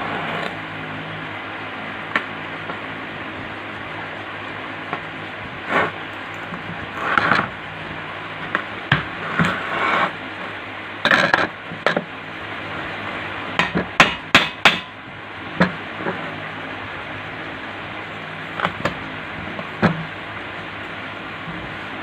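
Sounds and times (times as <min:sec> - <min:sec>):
hand tools knocking on metal: 0:13.6 - 0:14.9.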